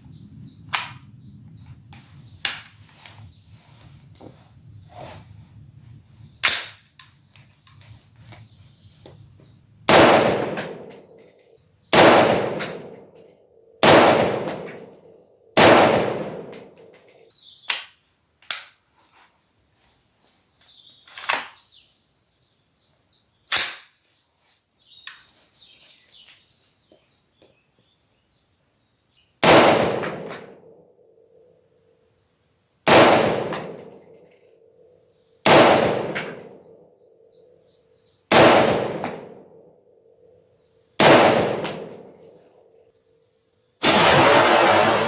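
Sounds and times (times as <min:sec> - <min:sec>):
loud rifle shots ringing: 0:09.9 - 0:11.2, 0:11.9 - 0:13.0, 0:13.8 - 0:14.9, 0:15.6 - 0:16.8, 0:29.4 - 0:30.6, 0:32.9 - 0:34.0, 0:35.4 - 0:36.5, 0:38.3 - 0:39.4, 0:41.0 - 0:42.2, 0:43.8 - 0:45.0
weaker gunshot cracks: 0:11.9 - 0:12.8, 0:13.8 - 0:14.7, 0:15.6 - 0:16.5, 0:29.4 - 0:30.4, 0:32.9 - 0:33.8, 0:35.5 - 0:36.4, 0:38.3 - 0:39.3.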